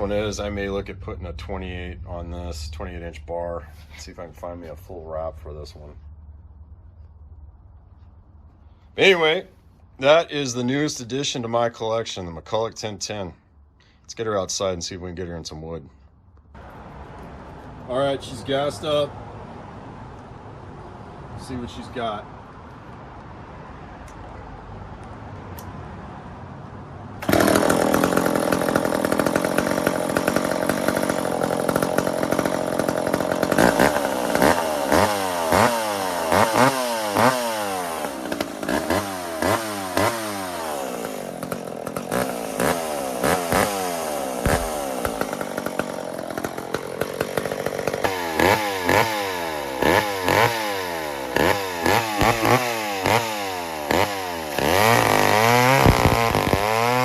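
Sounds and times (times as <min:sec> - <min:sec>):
chainsaw revving: 0:27.2 - 0:57.0.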